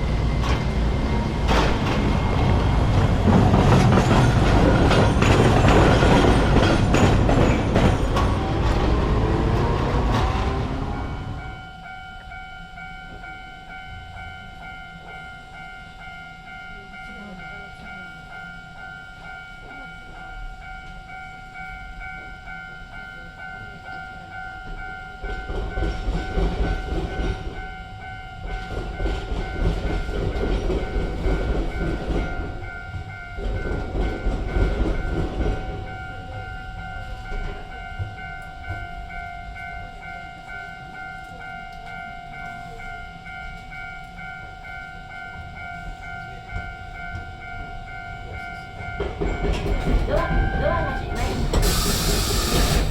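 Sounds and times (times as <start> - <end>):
train wheels rumbling and clattering: 0.0 - 12.4, 23.4 - 52.9
level-crossing bell ringing: 0.0 - 52.9.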